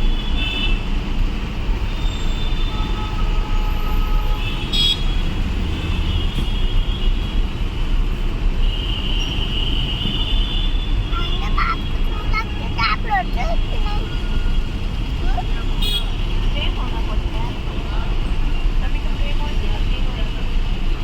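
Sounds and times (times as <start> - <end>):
traffic rumble: 0.0 - 21.0
faint car horns: 2.1 - 7.5, 13.5 - 16.5.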